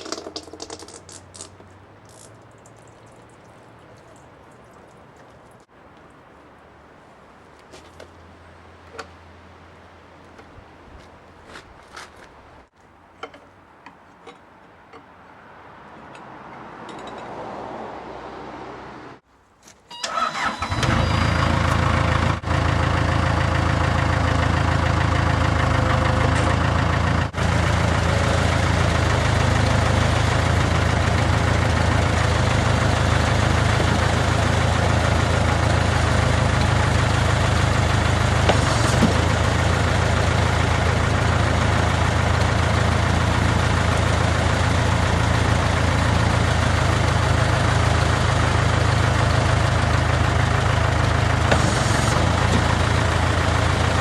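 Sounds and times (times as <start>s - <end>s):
diesel engine idling: 20.1s - 54.0s.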